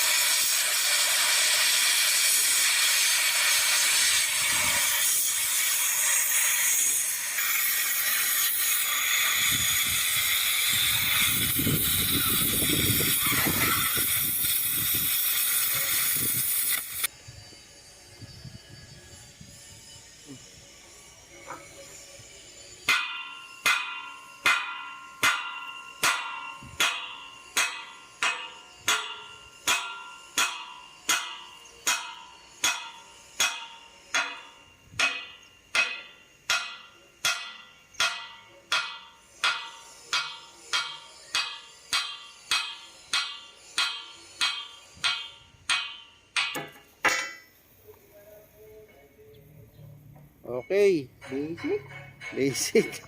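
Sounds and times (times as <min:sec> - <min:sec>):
hammer striking steel: 0:22.8 - 0:47.6, 0:50.5 - 0:53.0.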